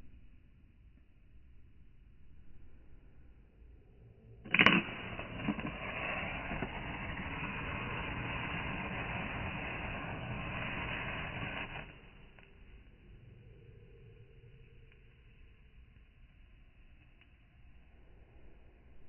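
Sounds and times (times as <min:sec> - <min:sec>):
match striking: 0:04.5 - 0:12.7
match burning hiss: 0:04.5 - 0:17.7.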